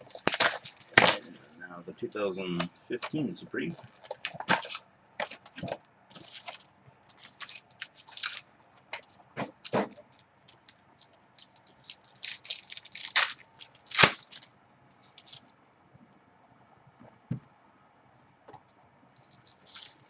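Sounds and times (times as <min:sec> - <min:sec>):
card packaging crinkling and tearing: 0:00.0 - 0:01.5, 0:03.0 - 0:15.4, 0:19.2 - 0:20.0
soft thump: 0:17.0 - 0:17.5.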